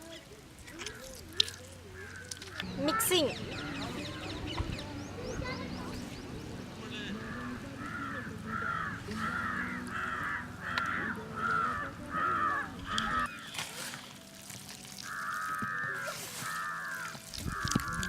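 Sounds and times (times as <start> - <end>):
crow cawing: 0.8 - 3.2, 7.2 - 13.5, 15.0 - 18.0.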